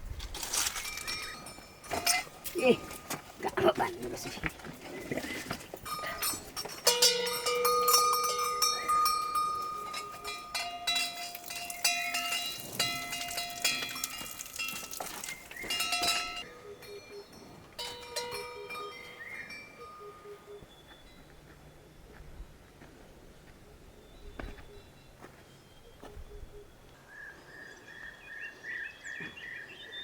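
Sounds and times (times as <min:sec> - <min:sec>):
cowbells clanking: 0:00.4 - 0:20.6.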